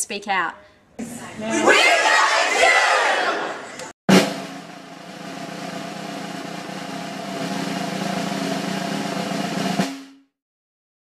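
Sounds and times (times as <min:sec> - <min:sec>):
snare drum roll: 0:04.1 - 0:10.4.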